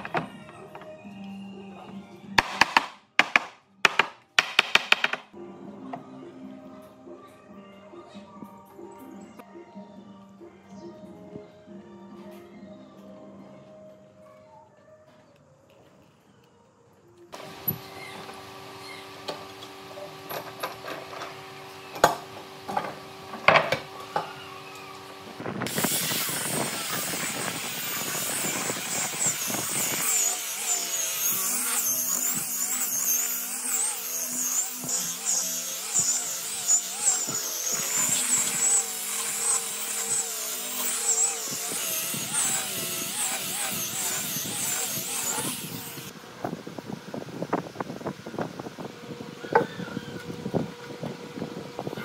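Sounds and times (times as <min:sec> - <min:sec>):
knocks and taps: 0:02.4 - 0:05.3
power tool cutting wood: 0:17.4 - 0:46.1.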